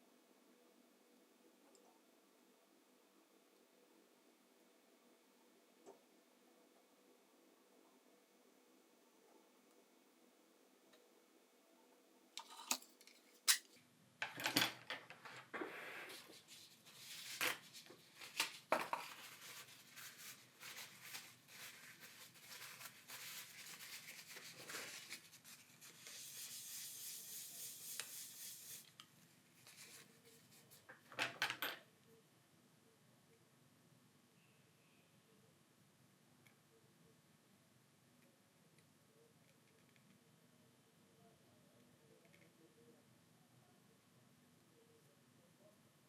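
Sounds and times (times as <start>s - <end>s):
soft scraping and rubbing: 15.1s - 29.0s, 29.6s - 30.8s.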